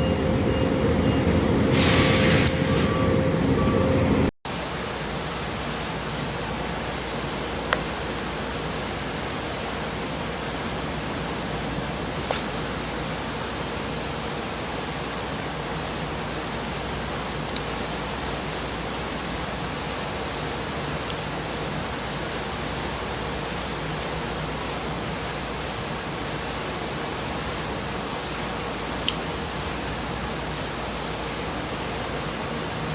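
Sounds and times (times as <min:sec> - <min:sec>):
steady hiss: 0:04.5 - 0:32.9.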